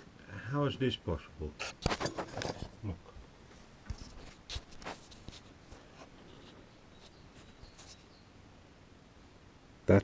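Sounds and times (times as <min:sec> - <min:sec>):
light scraping against a surface: 0:01.8 - 0:02.8.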